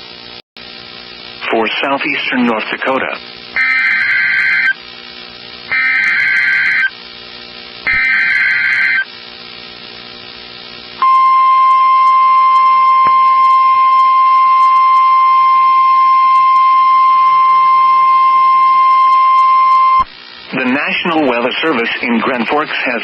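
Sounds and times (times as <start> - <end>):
steady single-pitched alarm tone: 3.6 - 4.8, 5.7 - 7.0, 7.9 - 9.1, 11.0 - 20.0.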